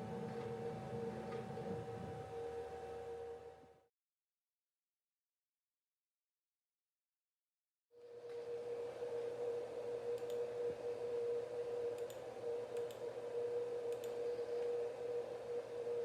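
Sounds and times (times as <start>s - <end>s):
low hum: 0.0s - 3.9s, 8.0s - 16.0s.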